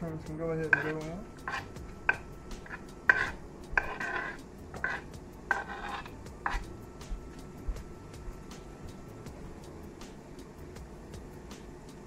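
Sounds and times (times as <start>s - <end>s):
utensil scraping and clinking on frying pan: 0.6s - 6.7s.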